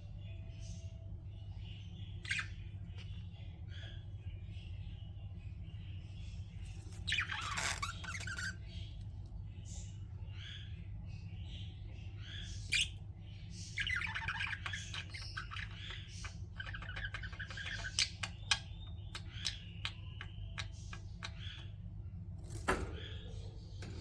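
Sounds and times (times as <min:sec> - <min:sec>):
steady low hum: 0:00.0 - 0:24.0
budgerigars chattering: 0:12.3 - 0:21.8.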